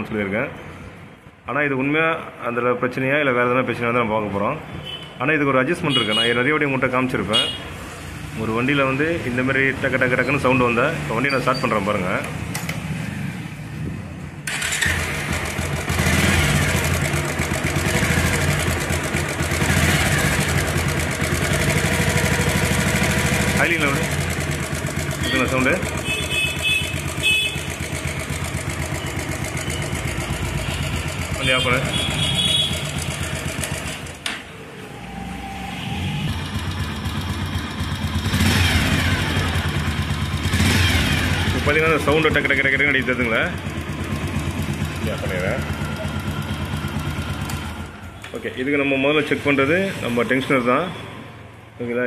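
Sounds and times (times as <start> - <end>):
motorcycle engine starting: 14.4 - 34.4, 35.8 - 48.1
motorcycle engine idling: 14.5 - 34.1, 36.3 - 48.2.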